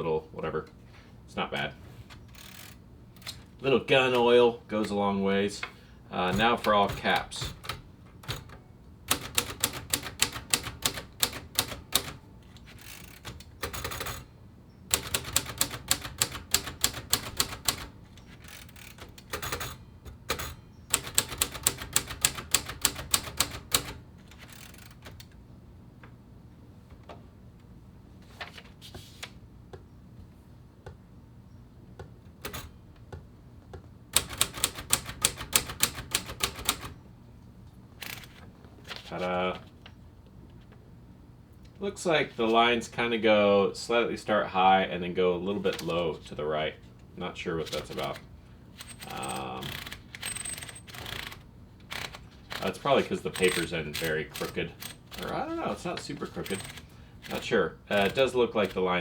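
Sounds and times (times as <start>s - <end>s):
manual typewriter typing: 1.7s - 25.4s, 32.3s - 33.1s, 34.1s - 37.0s, 38.0s - 39.8s, 45.5s - 46.4s, 47.5s - 59.0s.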